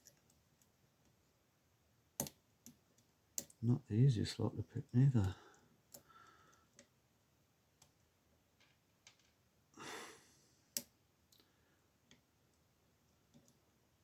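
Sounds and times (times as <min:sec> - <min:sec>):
soft breath out: 0:09.8 - 0:10.7.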